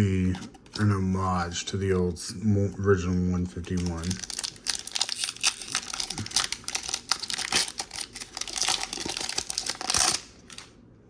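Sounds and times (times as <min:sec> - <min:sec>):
foil wrapper crinkling and tearing: 0:03.6 - 0:10.7.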